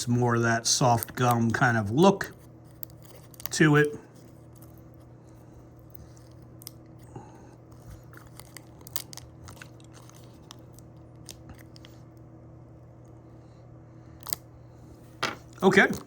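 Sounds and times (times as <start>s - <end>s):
faint hum: 0.0s - 16.0s
wrapper crackling as peeled: 8.0s - 11.8s.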